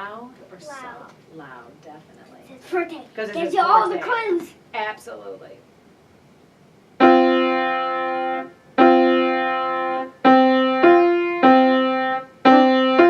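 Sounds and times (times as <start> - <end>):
loud piano playing: 7.0 - 13.0.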